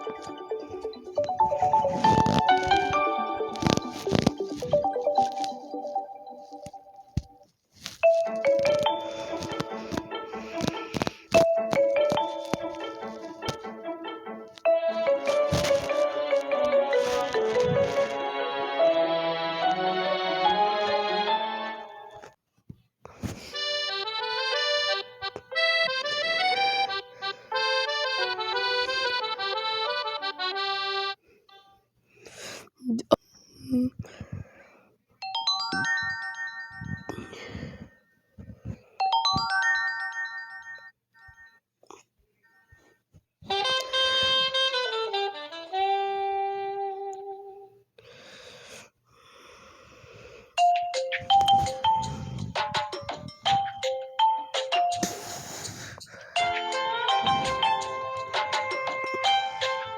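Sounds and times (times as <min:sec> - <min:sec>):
reedy phone ringtone melody: 0:00.0 - 0:07.4, 0:08.0 - 0:10.0, 0:14.7 - 0:17.8, 0:39.0 - 0:41.5, 0:50.6 - 0:55.4, 0:56.4 - 0:59.9.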